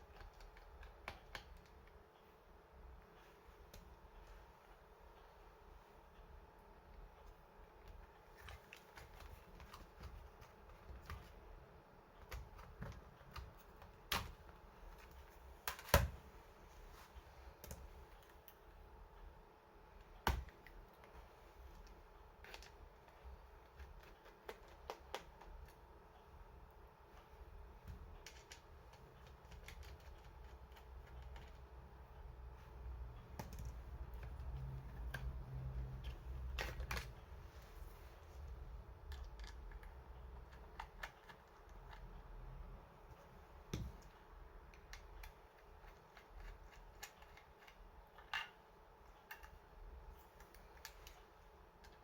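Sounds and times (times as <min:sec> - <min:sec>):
laptop parts clicking and tapping: 0:00.0 - 0:02.0, 0:07.2 - 0:16.3, 0:20.0 - 0:25.8, 0:27.2 - 0:37.4, 0:38.5 - 0:52.0.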